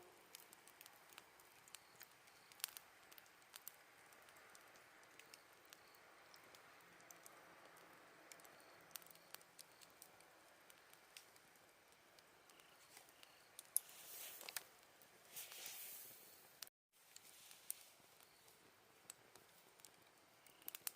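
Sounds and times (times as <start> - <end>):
campfire crackling and popping: 0.0 - 20.9
fire hissing: 0.0 - 20.9
insects chirping: 12.2 - 13.7.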